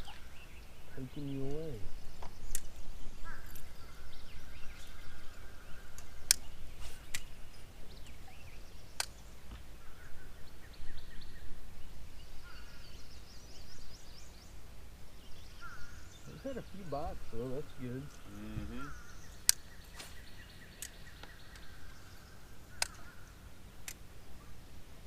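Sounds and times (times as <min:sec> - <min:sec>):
birds chirping: 0:00.0 - 0:25.0
sharp clicks: 0:02.2 - 0:02.7, 0:06.0 - 0:06.5, 0:09.0 - 0:09.2, 0:19.4 - 0:19.7, 0:20.8 - 0:21.7, 0:22.8 - 0:23.1, 0:23.8 - 0:24.0.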